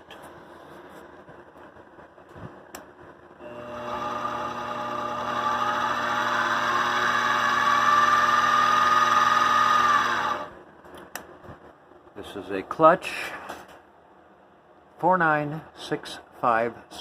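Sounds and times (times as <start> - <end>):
milling machine motor whine: 3.4 - 10.6.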